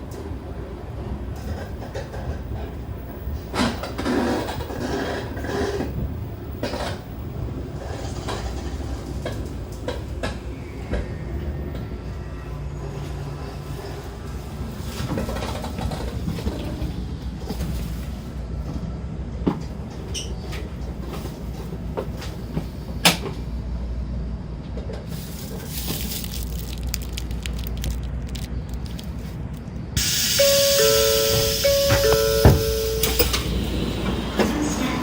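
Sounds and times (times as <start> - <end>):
train running rumble: 0.0 - 35.0
loud hiss: 30.0 - 34.7.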